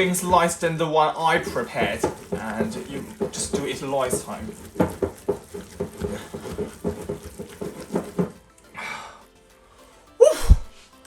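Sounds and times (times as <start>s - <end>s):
stirring filling in a glass bowl: 0.0s - 8.5s
person breathing: 8.8s - 9.9s.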